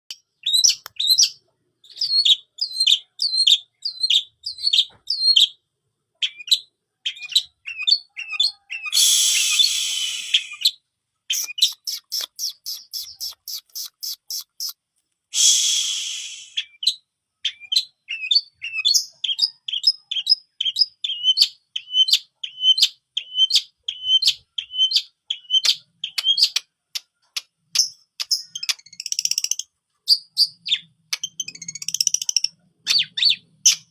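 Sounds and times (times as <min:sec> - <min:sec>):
bird short sharp chirps: 0:08.2 - 0:14.8, 0:15.4 - 0:16.8
bird harsh rasping buzzes: 0:09.0 - 0:10.6, 0:15.4 - 0:16.6
bird fast clicking notes: 0:11.3 - 0:14.8.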